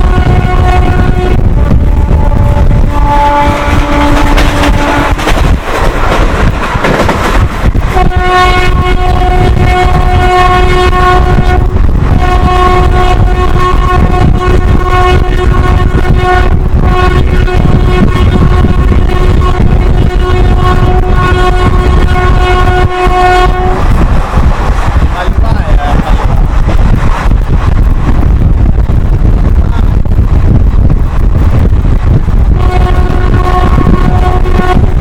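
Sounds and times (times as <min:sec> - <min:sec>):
train horn: 0:00.0 - 0:05.6, 0:07.8 - 0:24.1, 0:32.3 - 0:35.0
train running rumble: 0:00.0 - 0:35.0.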